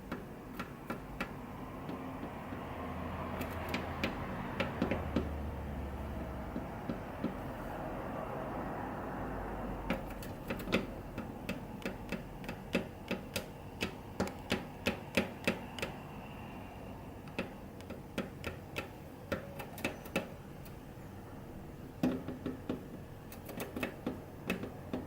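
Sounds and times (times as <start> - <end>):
tapping on a bird cage: 0.0 - 5.5, 6.1 - 7.6, 9.8 - 16.0, 17.3 - 20.8, 22.0 - 25.0.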